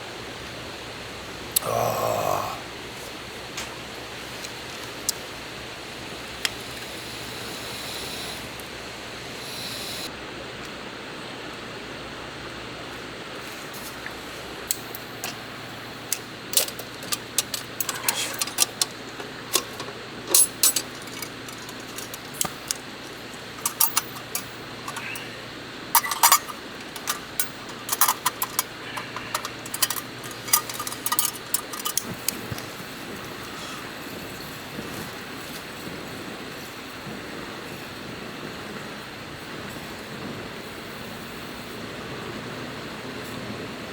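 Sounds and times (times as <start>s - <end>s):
steady background hiss: 0.0s - 43.9s
cookware clinking: 16.6s - 25.3s, 26.0s - 32.7s.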